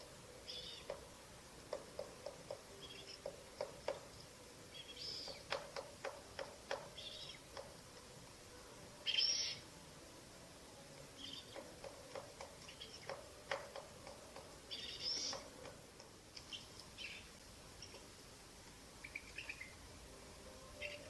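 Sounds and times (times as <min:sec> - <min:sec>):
owl chicks raspy hissing calls: 0:09.0 - 0:09.6, 0:14.7 - 0:15.5.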